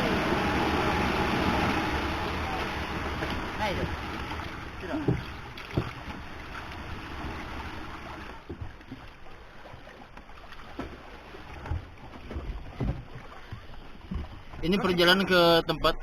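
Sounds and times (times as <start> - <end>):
boat rushing through water: 0.0 - 16.0.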